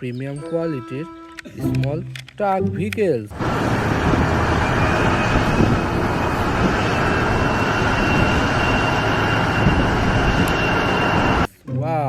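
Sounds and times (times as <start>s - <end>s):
loud rushing noise: 3.3s - 11.5s
faint high whine: 3.4s - 11.5s.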